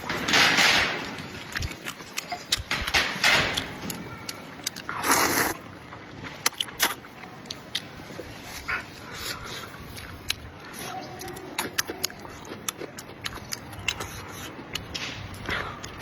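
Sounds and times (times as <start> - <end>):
chewing and mouth noises: 1.3 - 3.0, 3.6 - 16.0
hissing slurps: 4.9 - 5.6.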